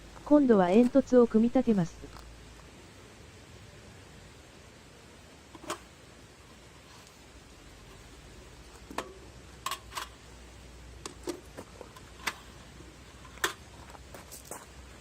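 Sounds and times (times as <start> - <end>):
metal parts clicking and tapping: 8.9 - 10.1.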